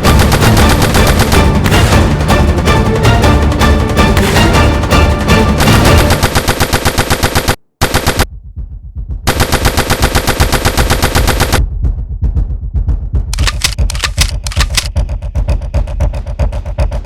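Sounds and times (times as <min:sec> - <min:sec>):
automatic gunfire: 0:00.1 - 0:02.0, 0:05.5 - 0:08.3, 0:09.3 - 0:11.6.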